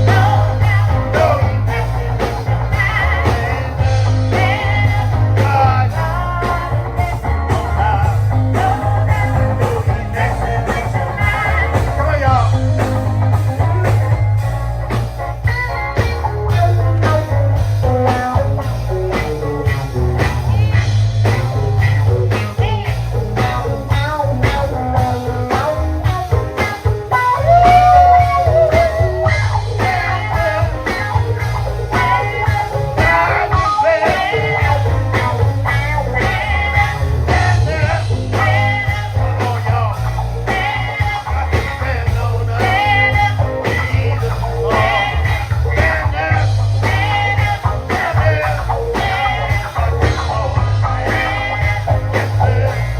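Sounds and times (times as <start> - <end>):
person singing: 0.0 - 14.2, 22.2 - 52.9
gospel band playing: 0.0 - 52.9.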